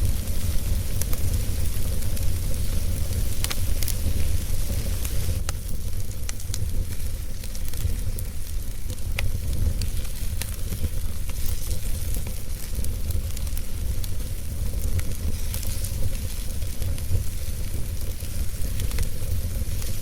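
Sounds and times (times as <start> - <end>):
fire crackling and popping: 0.0 - 20.0
fire low rumble and hiss: 0.0 - 20.0.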